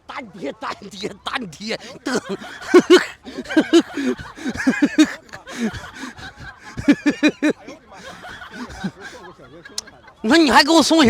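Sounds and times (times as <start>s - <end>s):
person laughing: 1.0s - 9.2s.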